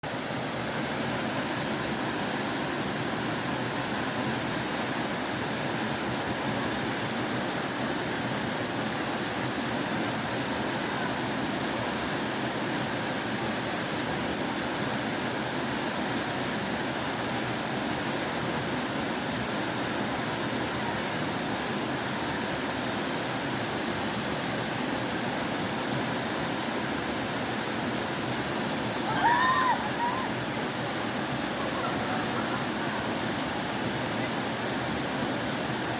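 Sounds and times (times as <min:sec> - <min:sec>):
flowing water rushing: 0:00.0 - 0:35.9.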